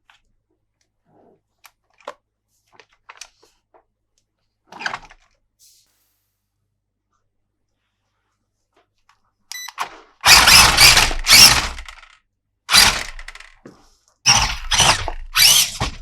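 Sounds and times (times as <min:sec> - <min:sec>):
plastic toy clicks: 0:09.5 - 0:13.6, 0:14.3 - 0:16.0.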